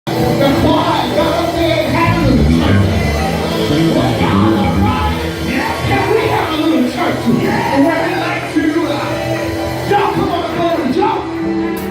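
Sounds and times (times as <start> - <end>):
electric guitar: 0.1 - 6.5
bass guitar: 0.1 - 6.6
keyboards: 0.1 - 11.9
gospel singing voices: 0.4 - 7.8.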